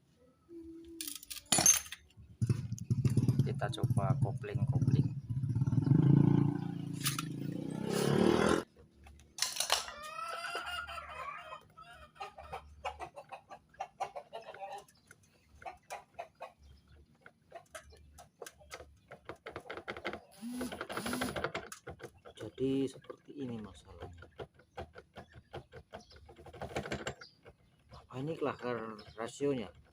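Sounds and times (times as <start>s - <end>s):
rough gearbox noise: 1.1s - 8.7s, 18.1s - 29.9s
motorcycle engine running: 2.2s - 8.6s.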